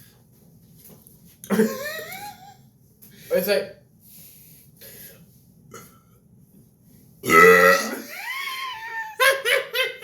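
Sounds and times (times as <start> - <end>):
person burping: 7.2 - 8.1.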